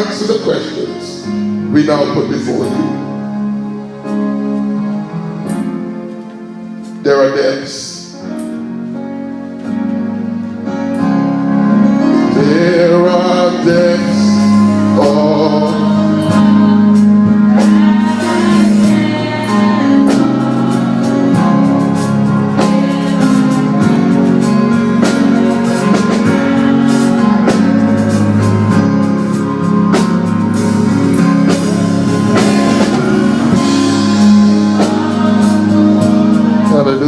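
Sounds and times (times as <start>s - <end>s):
gospel song with drums: 0.0s - 37.0s.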